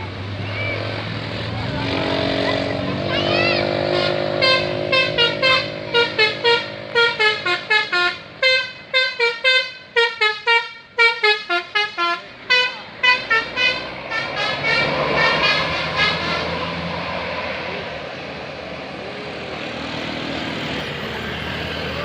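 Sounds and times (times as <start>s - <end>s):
bus musical horn tune: 1.9s - 16.9s.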